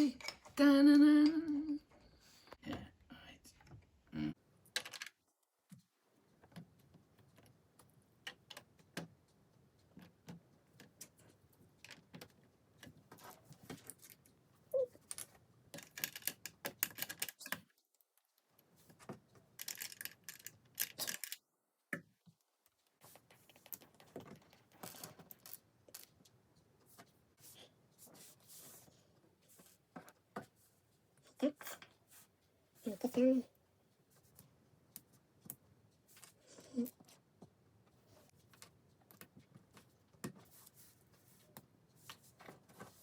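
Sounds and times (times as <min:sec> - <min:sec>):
plastic toy bricks clicking: 0:14.8 - 0:17.6, 0:19.6 - 0:21.4.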